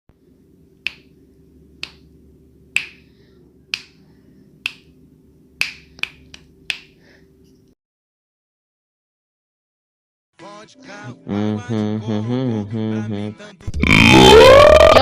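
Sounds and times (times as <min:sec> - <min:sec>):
faint low hum: 0:00.2 - 0:07.7
finger snapping: 0:00.8 - 0:01.1, 0:01.8 - 0:02.0, 0:02.8 - 0:03.0, 0:03.7 - 0:04.0, 0:04.6 - 0:04.9, 0:05.6 - 0:07.0.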